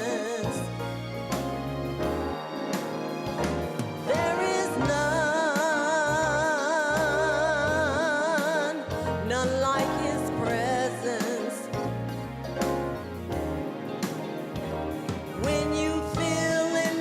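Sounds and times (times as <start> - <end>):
gospel song: 0.0 - 17.0
singer holding long vibrato note: 2.0 - 7.0.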